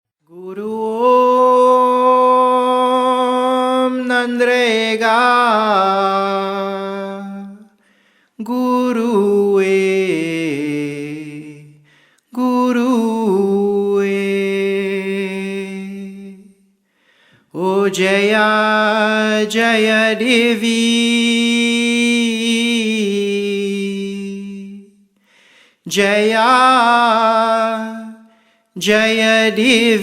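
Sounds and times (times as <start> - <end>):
person singing unaccompanied: 0.3 - 7.7, 25.9 - 30.0.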